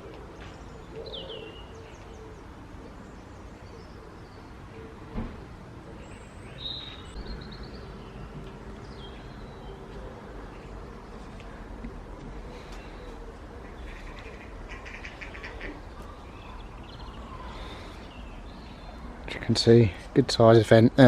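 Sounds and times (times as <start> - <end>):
low background noise: 0.0 - 21.0
small birds chirping: 5.9 - 20.6.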